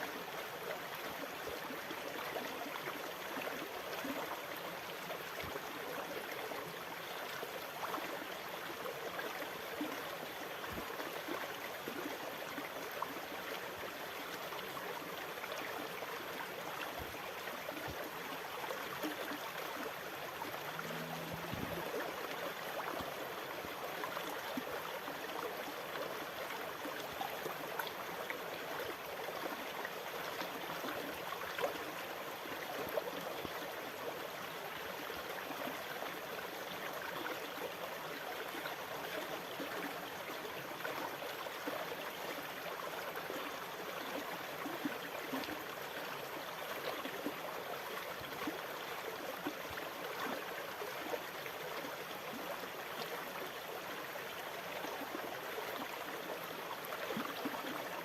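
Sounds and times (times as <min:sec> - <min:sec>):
water gurgling and trickling: 0:01.3 - 0:58.0
faint low hum: 0:20.4 - 0:23.0.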